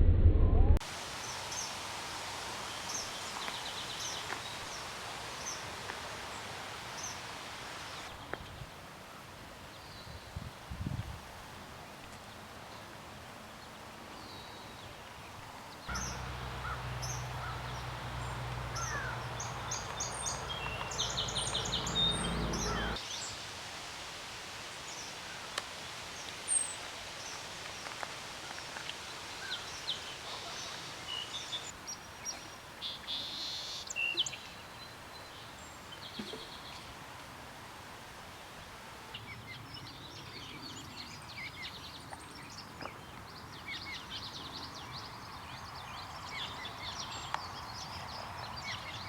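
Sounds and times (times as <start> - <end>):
low rumble: 0.0 - 0.8
birds calling and chirping: 15.9 - 23.0.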